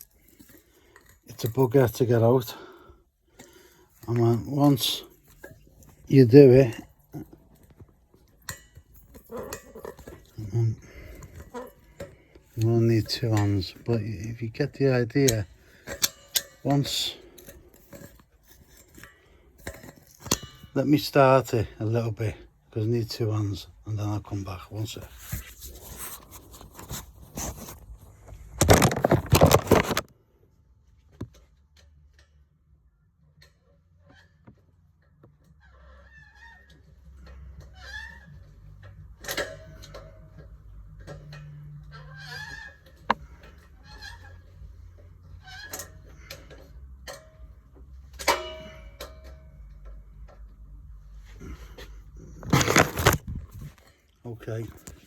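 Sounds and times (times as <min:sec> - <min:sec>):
metal tools clinking: 0:00.0 - 0:21.2, 0:28.6 - 0:30.1, 0:52.3 - 0:53.2
scraping and rattling handling: 0:03.4 - 0:21.0, 0:24.4 - 0:30.1, 0:51.1 - 0:55.0.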